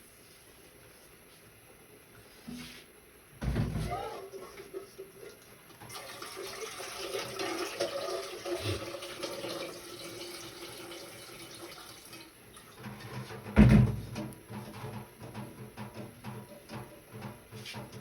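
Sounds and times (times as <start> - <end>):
tap water running into sink: 4.4 - 13.0.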